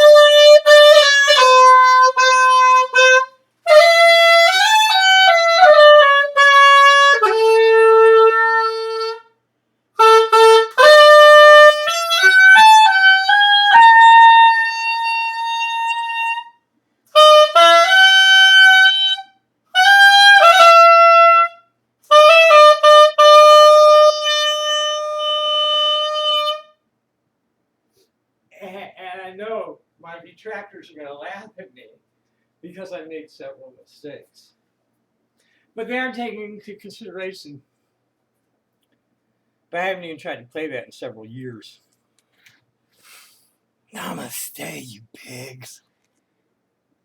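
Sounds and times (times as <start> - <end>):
solo saxophone melody: 0.0 - 9.2, 10.0 - 14.0, 17.2 - 18.5.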